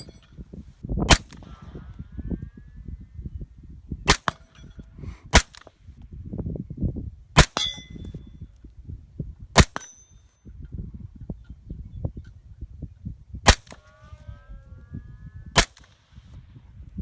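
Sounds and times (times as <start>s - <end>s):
metallic ring: 4.4s - 4.9s, 7.6s - 8.4s, 9.8s - 10.6s.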